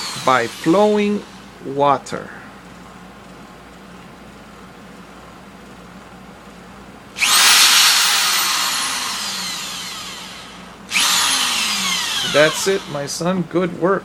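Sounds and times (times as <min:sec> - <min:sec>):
power drill driving screw: 0:00.0 - 0:01.2, 0:07.2 - 0:13.0.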